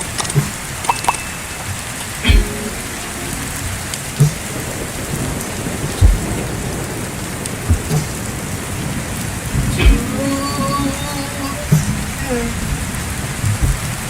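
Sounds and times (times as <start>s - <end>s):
heavy rain hissing: 0.0s - 14.0s
short deep thumps: 5.9s - 6.4s, 7.7s - 8.1s, 9.8s - 10.0s, 13.5s - 14.0s.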